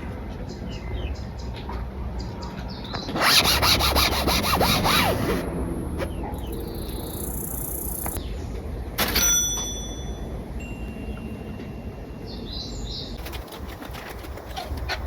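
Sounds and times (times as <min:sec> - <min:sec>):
metallic clink: 0:09.0 - 0:11.8.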